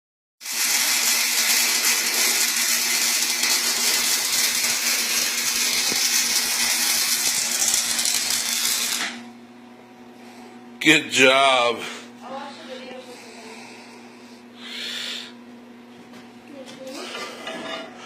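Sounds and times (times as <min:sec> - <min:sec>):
welding arc crackling hiss: 0:00.4 - 0:09.2.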